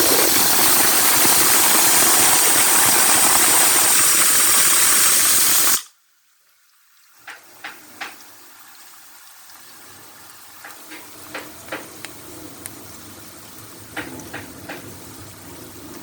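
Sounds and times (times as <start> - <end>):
pressure cooker whistle hissing: 0.0 - 5.9
faint steady noise: 0.0 - 16.0
sharp clicks and pops: 13.9 - 15.0.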